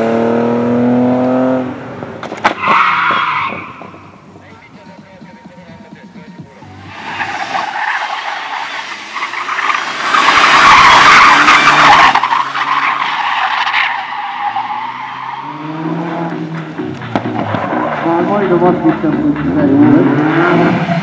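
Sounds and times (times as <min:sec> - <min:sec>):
car engine running hard: 0:00.0 - 0:02.6, 0:14.4 - 0:21.0
tyres squealing and skidding: 0:02.4 - 0:04.3, 0:06.6 - 0:21.0.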